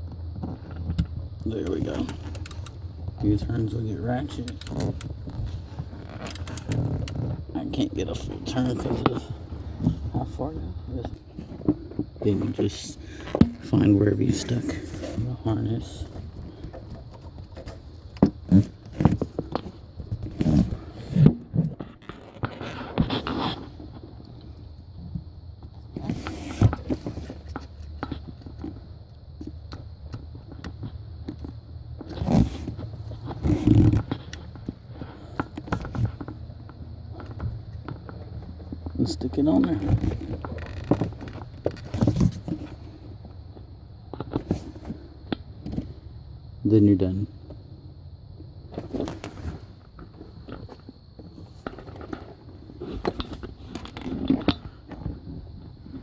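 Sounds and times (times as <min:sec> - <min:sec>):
handling knocks clicks and scrapes: 0:00.0 - 0:43.4, 0:44.1 - 0:46.0, 0:48.7 - 0:56.0
clicks and scrapes of wiring: 0:00.9 - 0:02.8, 0:03.5 - 0:07.4.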